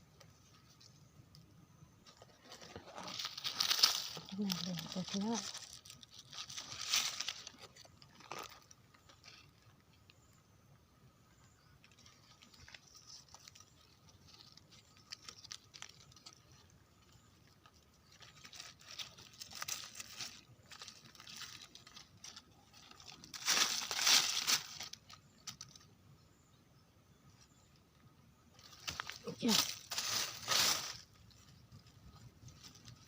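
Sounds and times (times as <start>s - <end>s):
dry leaves rustling and crackling: 2.0s - 9.9s, 11.8s - 25.9s, 28.5s - 33.0s
twigs snapping: 3.0s - 8.7s, 18.1s - 25.9s, 28.6s - 31.0s.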